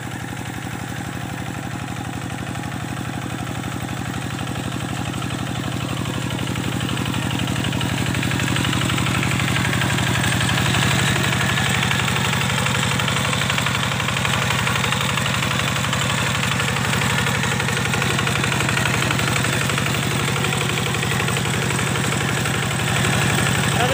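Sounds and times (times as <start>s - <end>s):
diesel engine running steadily: 0.0s - 23.9s.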